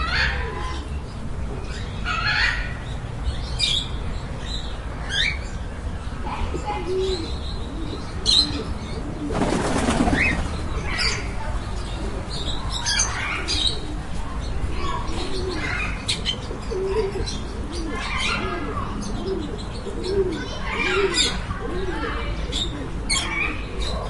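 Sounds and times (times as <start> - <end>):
pigeons cooing: 0.0 - 2.8, 6.3 - 24.0
wings flapping: 9.3 - 10.6.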